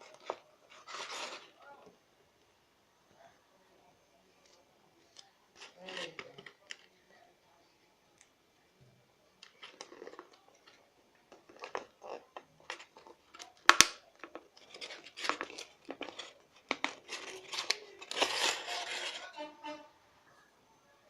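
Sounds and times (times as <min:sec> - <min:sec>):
scraping and crinkling materials: 0:00.0 - 0:01.9, 0:04.4 - 0:07.0, 0:09.4 - 0:19.9.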